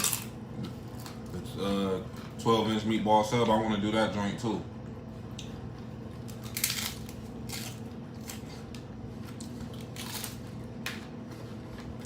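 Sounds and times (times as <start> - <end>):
crunchy chewing: 5.7 - 10.6.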